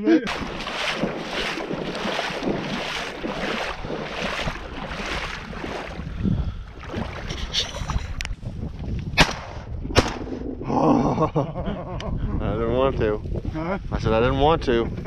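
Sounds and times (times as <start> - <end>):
rhythmic swishing of water: 0.2 - 8.7
wind on microphone: 0.3 - 15.0.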